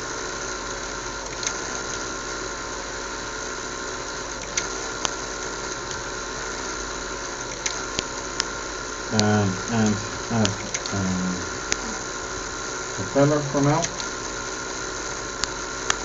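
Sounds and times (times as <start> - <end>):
sharp clicks: 10.4 - 11.0.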